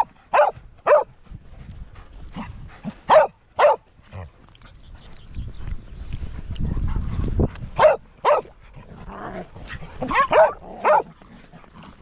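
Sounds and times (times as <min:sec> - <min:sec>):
dog barking: 0:00.0 - 0:01.1, 0:03.1 - 0:03.9, 0:07.8 - 0:08.6, 0:10.0 - 0:11.2
low rumble on microphone: 0:05.0 - 0:07.8.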